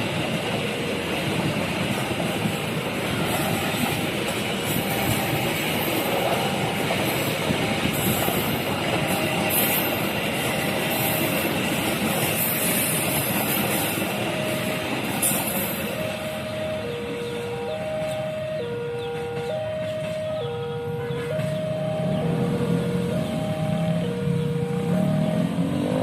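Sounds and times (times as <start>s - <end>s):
crossing warning siren: 0.0s - 26.0s
train wheels rumbling on rail: 0.0s - 26.0s.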